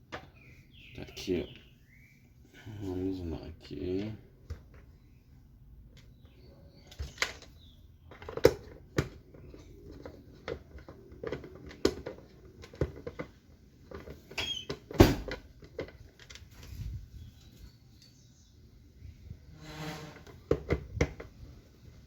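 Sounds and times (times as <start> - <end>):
plastic clicks and knocks: 6.0 - 16.4.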